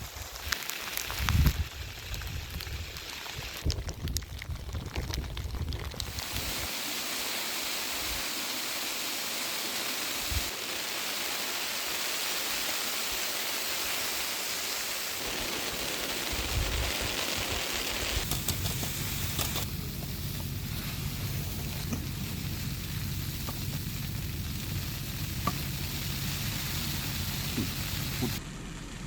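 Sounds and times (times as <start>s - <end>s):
steady rain hiss: 0.0s - 4.0s, 6.0s - 28.4s
low hum: 18.0s - 29.0s.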